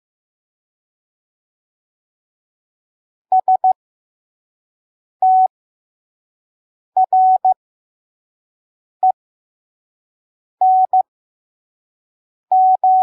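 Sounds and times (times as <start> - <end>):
morse code beeps: 7.0 - 7.6, 10.7 - 11.0, 12.5 - 13.0.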